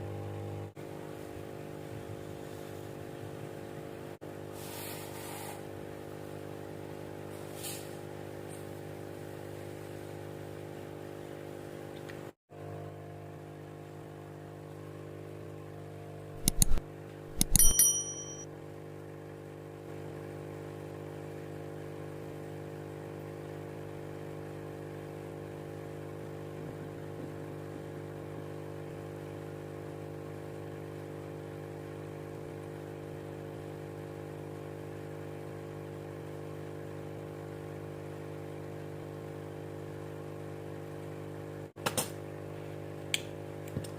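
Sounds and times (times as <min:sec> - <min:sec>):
aquarium pump motor humming: 0:00.0 - 0:04.8, 0:05.6 - 0:18.4, 0:19.0 - 0:43.9
sharp metallic clinks: 0:16.4 - 0:18.4.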